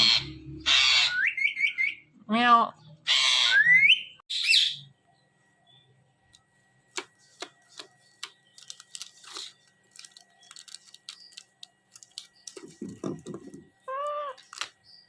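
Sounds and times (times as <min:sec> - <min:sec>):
parrot beak clicking and crunching: 0:07.0 - 0:14.8.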